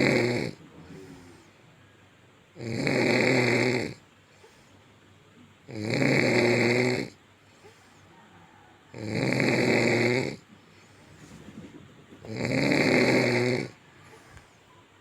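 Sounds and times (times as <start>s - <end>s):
woman snoring loudly: 0.0s - 1.4s, 2.6s - 4.0s, 5.7s - 7.8s, 8.9s - 10.4s, 12.2s - 14.3s.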